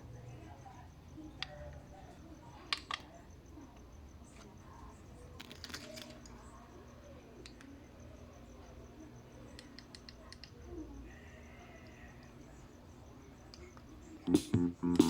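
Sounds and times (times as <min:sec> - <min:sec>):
quiet clicks and taps: 0:02.7 - 0:04.6, 0:07.4 - 0:07.8, 0:09.5 - 0:10.8.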